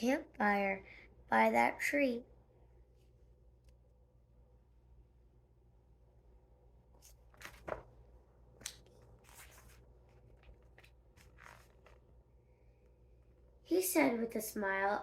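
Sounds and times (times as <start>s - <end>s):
paper pages rustling: 7.0s - 8.0s, 8.6s - 12.1s.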